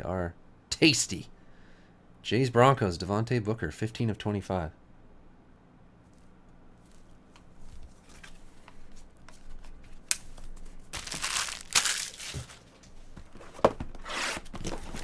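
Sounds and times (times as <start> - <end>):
plastic wrapping crinkling and tearing: 9.9 - 12.9.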